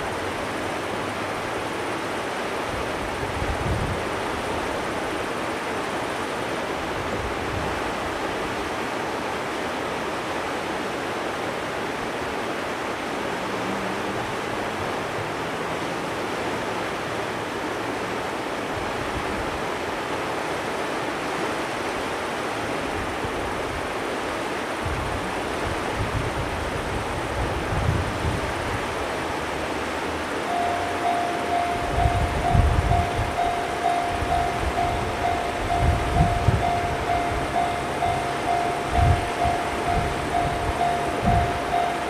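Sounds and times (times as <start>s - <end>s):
river water rushing: 0.0s - 42.0s
wind on microphone: 2.8s - 4.9s, 24.8s - 29.4s, 30.5s - 42.0s.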